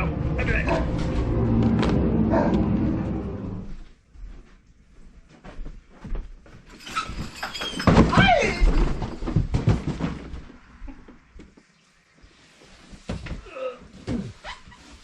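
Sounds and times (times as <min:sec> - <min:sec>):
knocks and thumps: 0:07.0 - 0:11.6.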